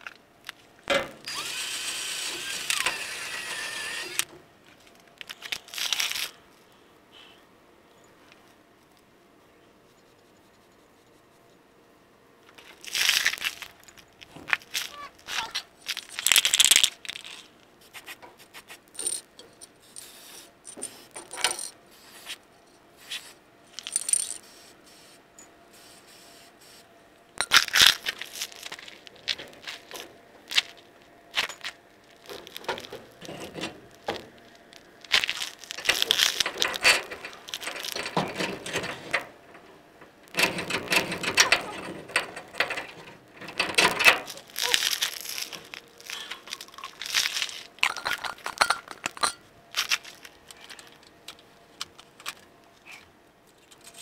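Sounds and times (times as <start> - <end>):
metal tools clinking and rattling: 19.0 - 19.8, 20.7 - 21.8, 23.7 - 24.4, 35.4 - 39.6, 40.4 - 49.4.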